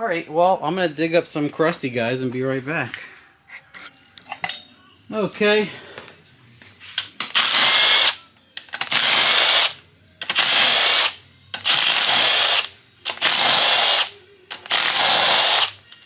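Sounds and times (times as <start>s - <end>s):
power tool whining: 7.2s - 16.0s.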